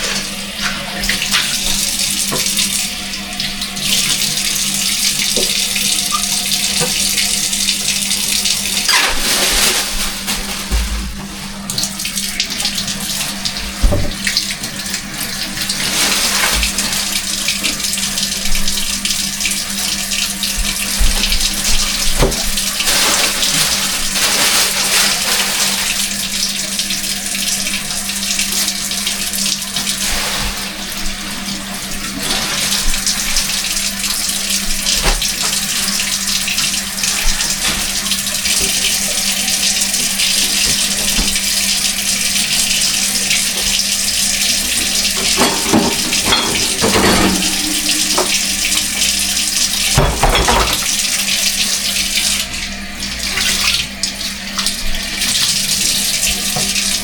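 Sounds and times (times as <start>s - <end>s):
faucet running into sink: 0.0s - 57.0s
items knocking in sink: 8.9s - 11.8s, 13.6s - 14.4s, 20.6s - 23.8s, 34.7s - 35.7s, 44.7s - 50.9s.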